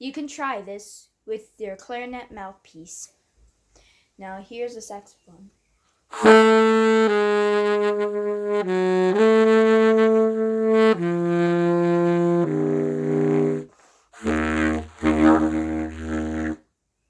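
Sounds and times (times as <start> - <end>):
trumpet playing held notes: 6.1 - 16.6.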